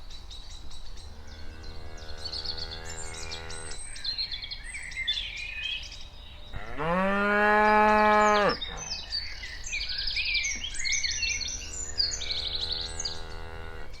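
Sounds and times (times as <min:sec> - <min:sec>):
cow mooing: 0:01.2 - 0:03.8, 0:06.6 - 0:09.1, 0:11.4 - 0:14.0.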